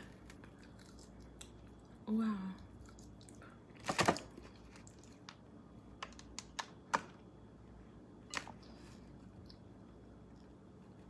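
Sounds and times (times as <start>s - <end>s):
person chewing food: 0.0s - 2.0s.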